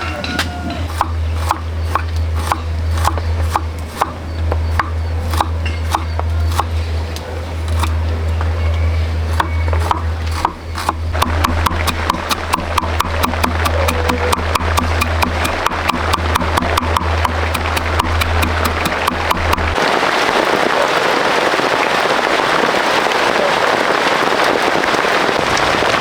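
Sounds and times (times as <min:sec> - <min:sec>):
steady low hum: 0:00.7 - 0:19.8
sharp woody knocks: 0:09.4 - 0:19.8.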